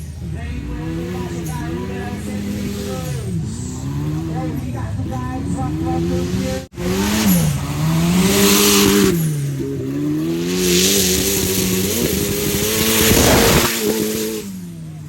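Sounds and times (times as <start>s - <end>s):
engine revving hard: 0.0s - 15.0s.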